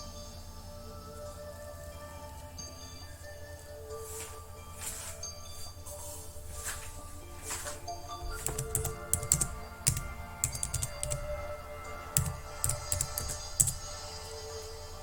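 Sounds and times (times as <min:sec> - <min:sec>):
background music: 0:00.0 - 0:15.0
keyboard typing: 0:08.2 - 0:14.0.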